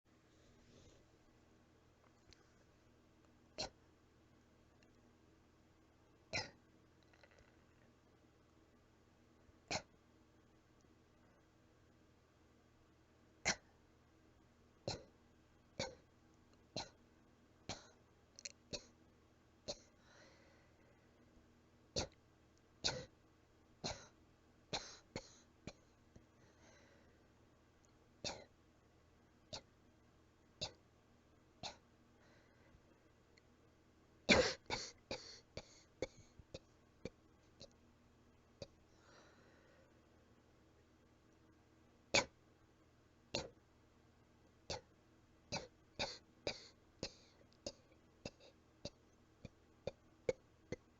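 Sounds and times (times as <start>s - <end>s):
soft weak coughing: 6.4s - 6.6s, 22.9s - 23.1s, 24.8s - 25.9s, 28.3s - 28.5s, 31.6s - 31.9s, 34.3s - 36.7s
soft weak coughs: 6.4s - 6.6s, 31.6s - 31.8s
faint breath: 19.9s - 21.3s, 26.3s - 27.3s, 32.2s - 32.9s, 38.8s - 40.1s.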